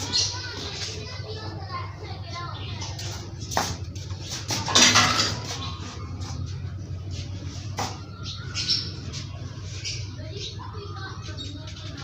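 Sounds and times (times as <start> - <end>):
parrot squawking and chirping: 8.1 - 10.8.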